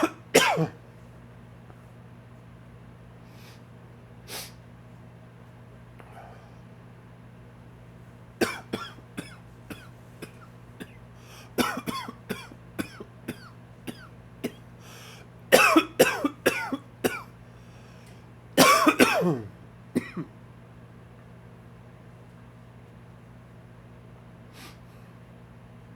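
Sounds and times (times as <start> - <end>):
man coughing: 0.0 - 0.8, 8.4 - 11.0, 11.6 - 14.6, 15.5 - 17.3, 18.6 - 20.3
steady low hum: 0.0 - 25.9.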